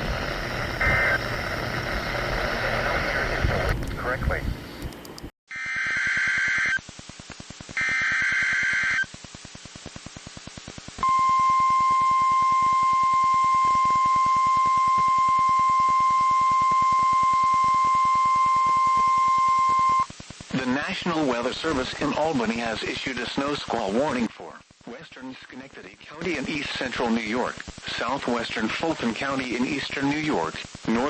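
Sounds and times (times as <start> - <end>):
warbling digital data tones: 0.0 - 4.4
faint rapid pulsing buzz: 0.0 - 5.3
steady high alarm beep: 11.0 - 20.1.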